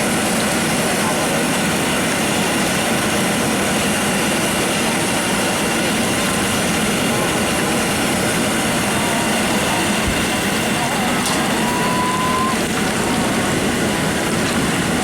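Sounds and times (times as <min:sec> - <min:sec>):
loud background din: 0:04.4 - 0:15.0
indistinct voices: 0:07.0 - 0:13.6.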